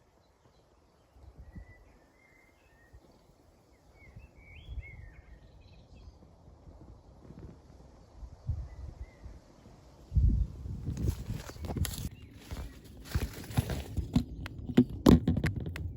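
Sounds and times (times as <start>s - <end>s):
rustling through vegetation: 10.6s - 14.9s.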